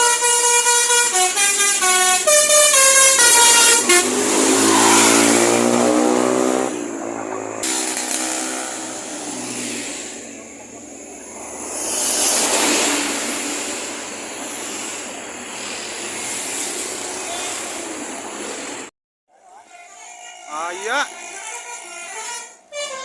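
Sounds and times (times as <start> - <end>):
bus air horn melody: 0.0 - 6.7, 19.7 - 23.0
bus engine and road noise: 0.0 - 23.0.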